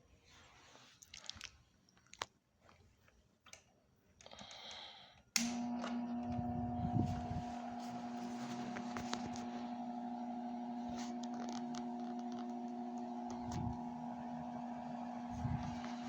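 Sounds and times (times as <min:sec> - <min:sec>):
desk fan motor humming: 0:05.4 - 0:16.0.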